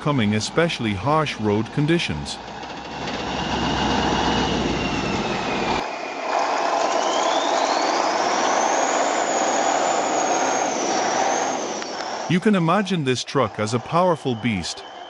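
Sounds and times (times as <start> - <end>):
diesel truck engine rumbling: 0.0 - 5.8
high whine rising in pitch: 2.7 - 12.7.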